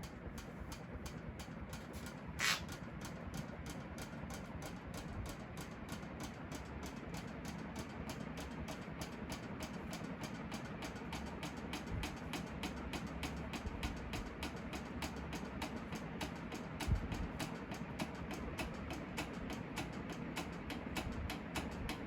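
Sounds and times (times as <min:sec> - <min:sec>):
ceiling fan running: 0:00.0 - 0:22.0
brief sharp hiss: 0:02.4 - 0:02.7.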